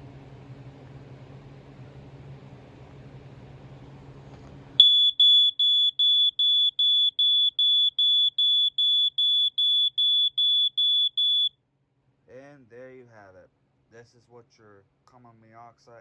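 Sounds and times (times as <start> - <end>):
carbon monoxide alarm beeping: 4.8 - 11.5.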